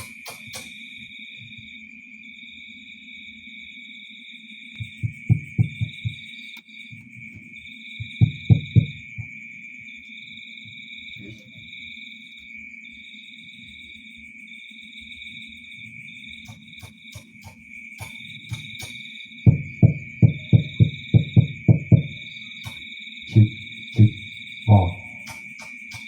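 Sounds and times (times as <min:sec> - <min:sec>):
sharp clicks: 0:00.0 - 0:00.8, 0:16.5 - 0:19.0, 0:22.6 - 0:26.0
insect chirring: 0:00.0 - 0:26.0
deep thumps: 0:04.8 - 0:06.2, 0:08.0 - 0:09.3, 0:19.5 - 0:22.2, 0:23.3 - 0:25.4.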